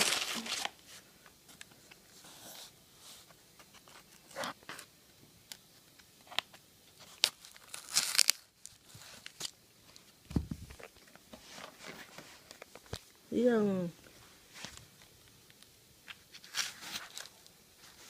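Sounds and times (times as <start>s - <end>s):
cardboard box tearing: 7.2s - 8.4s.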